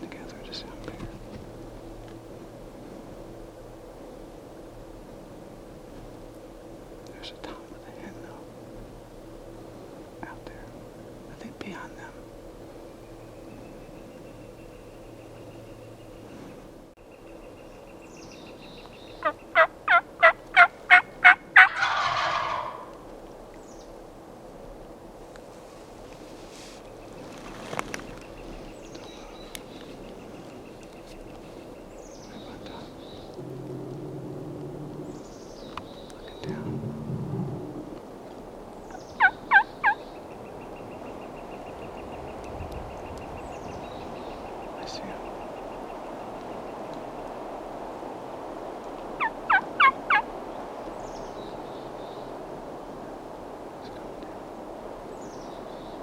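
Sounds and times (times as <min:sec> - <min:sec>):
hen turkey yelps: 0:19.2 - 0:23.0, 0:38.9 - 0:40.0, 0:49.2 - 0:50.2
wild turkey gobbling: 0:19.2 - 0:23.1, 0:38.9 - 0:40.0, 0:49.2 - 0:50.3.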